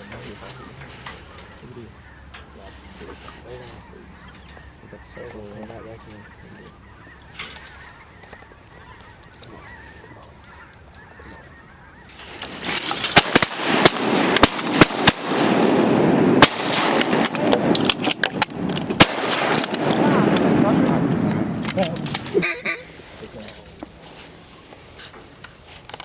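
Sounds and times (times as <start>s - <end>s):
flock of geese honking: 0.0s - 12.9s, 19.8s - 23.2s.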